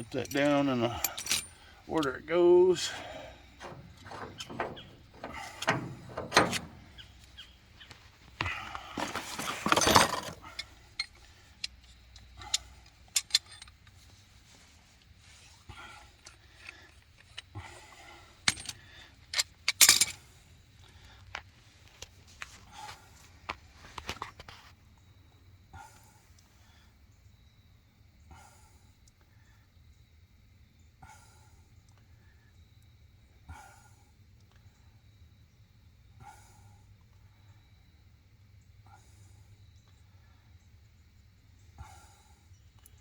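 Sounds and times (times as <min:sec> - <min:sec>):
metal pipe fittings clinking: 0:00.0 - 0:07.1, 0:09.4 - 0:13.9
metal scraping and rattling: 0:02.8 - 0:07.3, 0:09.0 - 0:10.5
loud metal clanks: 0:03.6 - 0:07.1.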